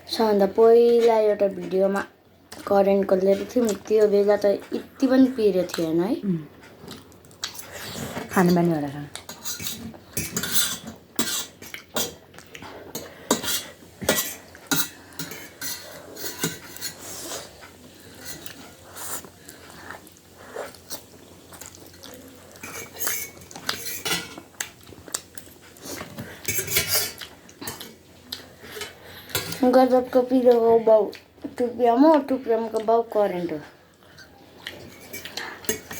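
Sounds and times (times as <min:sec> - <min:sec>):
utensils clinking against a dish: 0:07.5 - 0:12.2, 0:12.9 - 0:18.7, 0:22.5 - 0:24.5, 0:25.3 - 0:27.9, 0:34.7 - 0:35.9.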